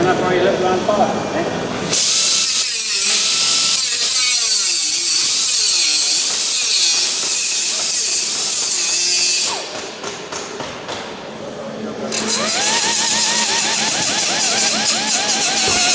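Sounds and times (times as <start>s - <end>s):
power tool running with hiss: 1.2s - 10.0s, 12.1s - 15.9s.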